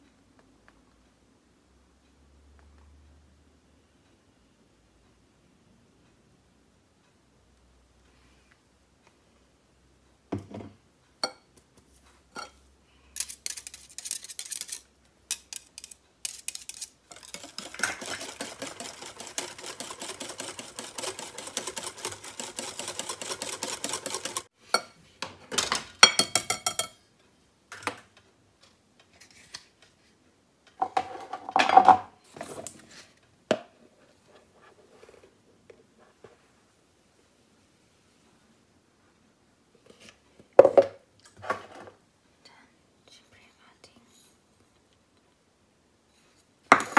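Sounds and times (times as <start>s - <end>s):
fast whisking: 13.2s - 24.5s
utensil clatter: 13.2s - 24.5s
utensil clinking against a bowl: 13.2s - 25.0s, 26.0s - 27.0s.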